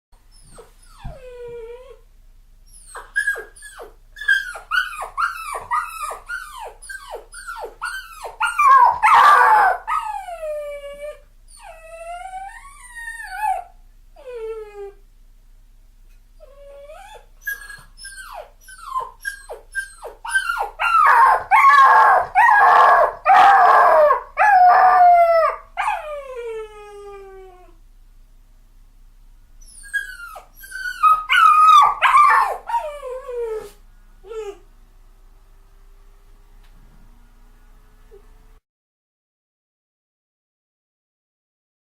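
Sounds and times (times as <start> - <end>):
puppy whimpering and crying: 0.3 - 2.0, 2.7 - 15.0, 16.4 - 27.8, 29.6 - 34.6.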